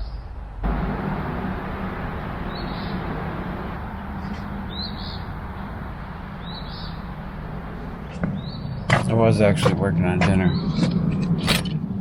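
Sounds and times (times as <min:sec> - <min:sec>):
steady rushing background noise: 0:00.3 - 0:12.0
songbird short high call: 0:01.0 - 0:05.7.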